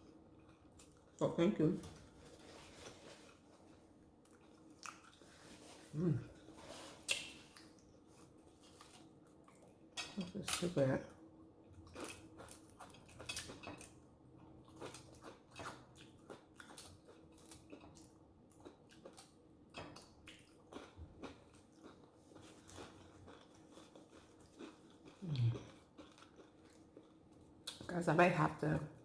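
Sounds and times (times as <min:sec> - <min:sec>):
chewing and wet mouth sounds: 0:01.9 - 0:27.9
low hum of voice: 0:05.9 - 0:06.3.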